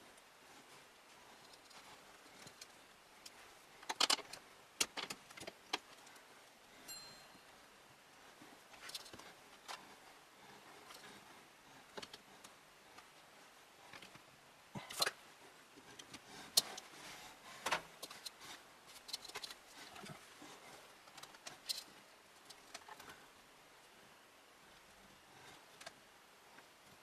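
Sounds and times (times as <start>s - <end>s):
hands handling computer parts: 1.4s - 6.3s, 8.7s - 9.9s, 15.8s - 23.2s.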